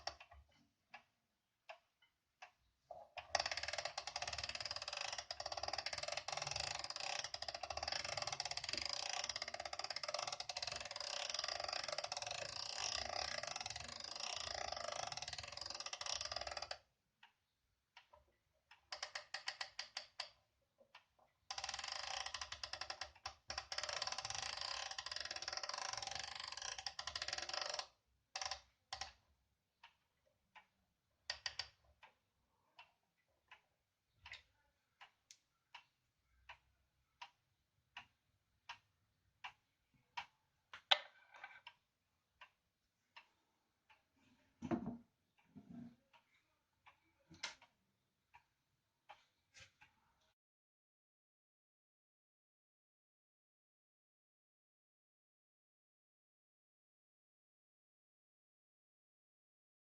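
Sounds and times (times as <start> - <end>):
clock winding ratchet clicking: 3.2 - 16.8, 18.9 - 20.4, 21.5 - 29.2, 31.3 - 31.8.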